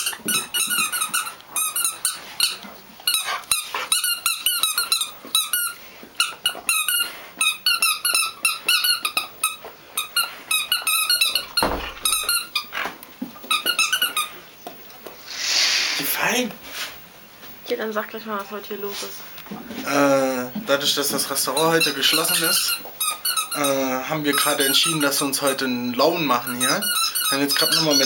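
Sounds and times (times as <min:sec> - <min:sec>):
squeaky toy squeaking: 0:00.0 - 0:12.7, 0:13.5 - 0:14.3, 0:21.3 - 0:28.0.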